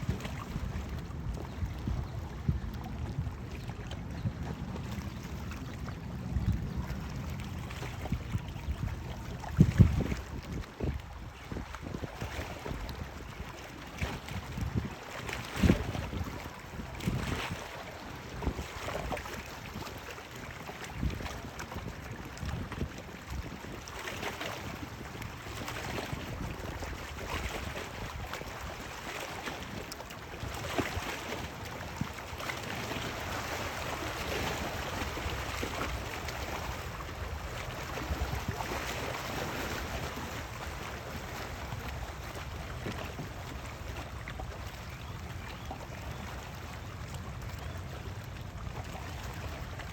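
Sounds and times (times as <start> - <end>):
wind buffeting microphone: 0.0 - 28.9, 29.5 - 43.7
water sloshing: 6.4 - 44.8.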